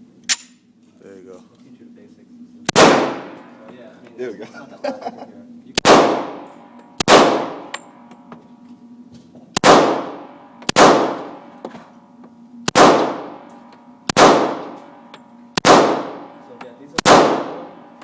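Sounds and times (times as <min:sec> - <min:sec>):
handgun shots with ringing echo: 0:02.7 - 0:03.5, 0:05.8 - 0:08.1, 0:09.6 - 0:11.5, 0:12.7 - 0:17.9.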